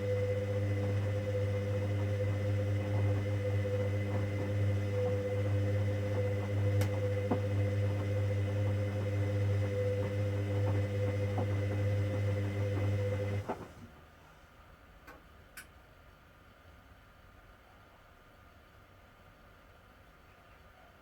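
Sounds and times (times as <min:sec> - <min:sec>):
washing machine hum: 0:00.0 - 0:14.1.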